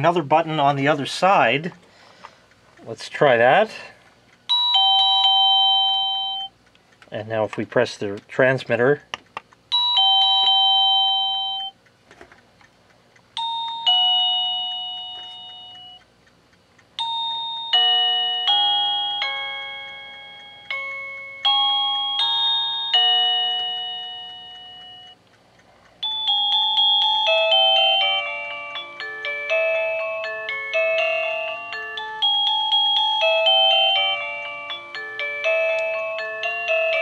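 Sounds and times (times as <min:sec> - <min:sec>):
electronic doorbell chime tunes: 0:04.5 - 0:06.5, 0:09.7 - 0:11.8, 0:13.4 - 0:16.0, 0:17.0 - 0:25.2, 0:26.0 - 0:37.0.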